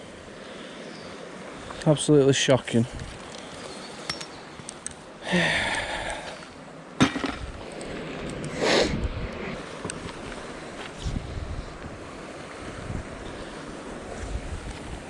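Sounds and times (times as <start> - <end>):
hard object clink: 4.0 - 4.4.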